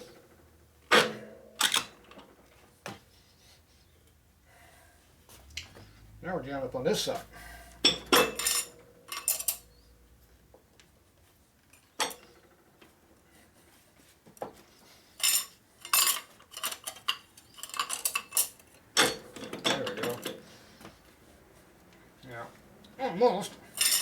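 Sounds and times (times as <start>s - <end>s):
hand tools clinking on metal: 7.2s - 9.8s, 15.1s - 20.4s, 23.4s - 24.0s.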